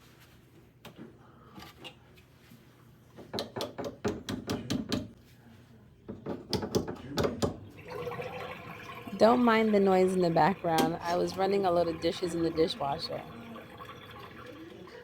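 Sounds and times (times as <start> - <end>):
dishwasher humming: 7.7 - 15.0.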